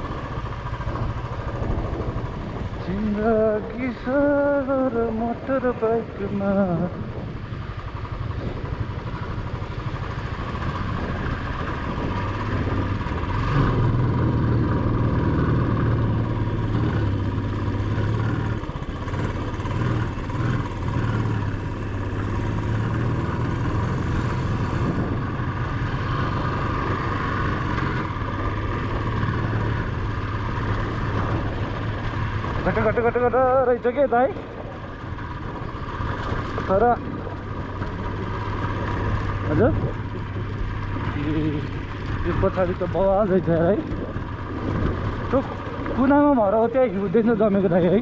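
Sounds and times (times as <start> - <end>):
wind noise: 0.0 - 32.7, 34.3 - 47.1
motorcycle engine running: 0.0 - 48.0
road noise: 0.0 - 48.0.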